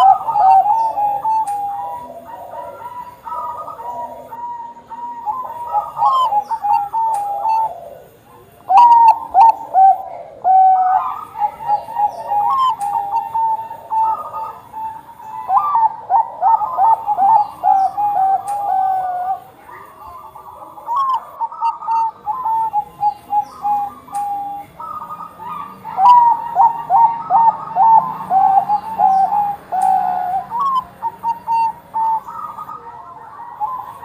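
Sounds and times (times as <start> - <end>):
dove cooing: 0.0 - 34.0.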